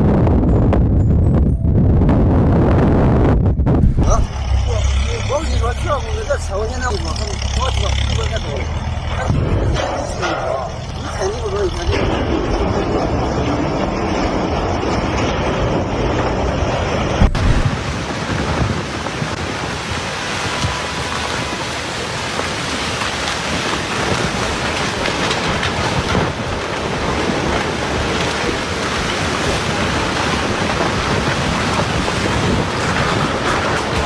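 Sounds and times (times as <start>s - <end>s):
wind: 0.0s - 34.0s
loud thump: 3.8s - 4.4s, 17.2s - 18.0s
heavy rain: 17.2s - 34.0s.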